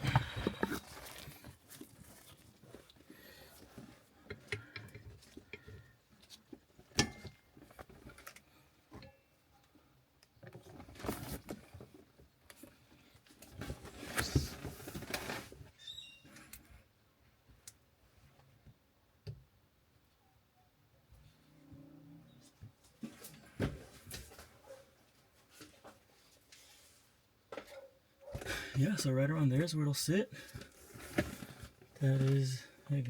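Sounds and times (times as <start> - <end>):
rustling and scraping: 0.0 - 8.8, 10.5 - 16.8, 22.4 - 29.0, 30.4 - 32.8.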